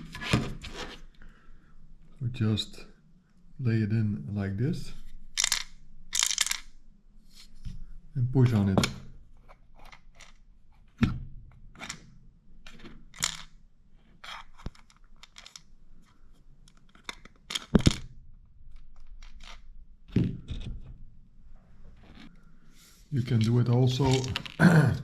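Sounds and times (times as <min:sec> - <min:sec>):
plastic parts clicking and knocking: 0:05.4 - 0:06.7, 0:08.7 - 0:13.6, 0:14.3 - 0:21.1, 0:23.4 - 0:24.6.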